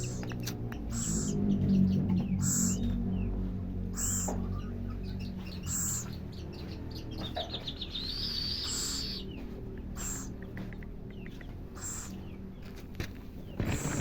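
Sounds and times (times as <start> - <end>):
owlet raspy begging calls: 0.0 - 1.6, 2.3 - 3.0, 3.9 - 4.8, 5.6 - 6.1, 8.0 - 9.2, 9.9 - 10.4, 11.7 - 12.2, 13.6 - 14.0.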